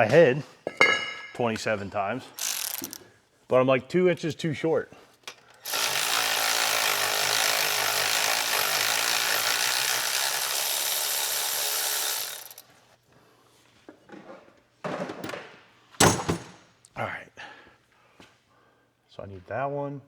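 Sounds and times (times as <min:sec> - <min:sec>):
power tool running: 0:02.4 - 0:03.0, 0:05.6 - 0:12.7.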